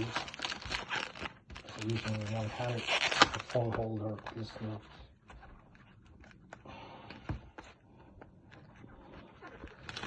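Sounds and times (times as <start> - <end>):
cardboard box and plastic handled: 0.0 - 6.6.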